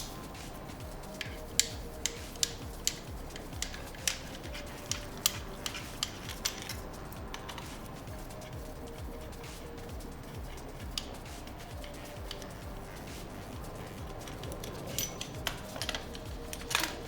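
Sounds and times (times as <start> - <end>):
faint background music: 0.0 - 17.0
metal tools clinking: 1.1 - 8.6, 13.8 - 17.0.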